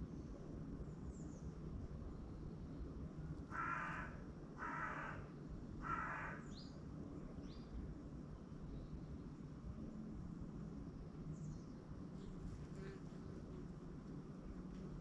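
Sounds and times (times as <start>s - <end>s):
crow cawing: 3.5s - 6.6s.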